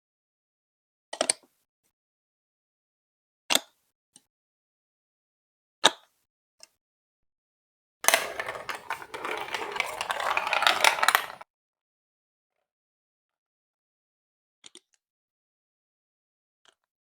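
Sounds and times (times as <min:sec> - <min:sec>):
marbles rattling along plastic track: 0:08.1 - 0:11.4.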